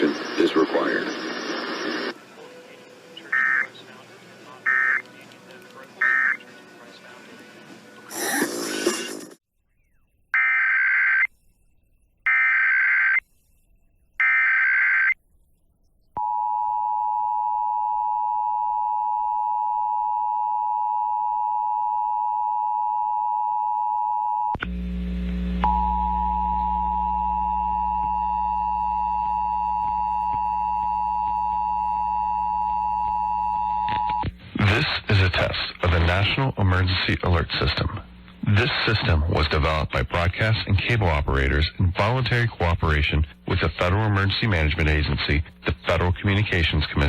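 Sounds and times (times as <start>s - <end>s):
digital data bursts: 6.0s - 6.4s
low hum: 24.6s - 34.6s.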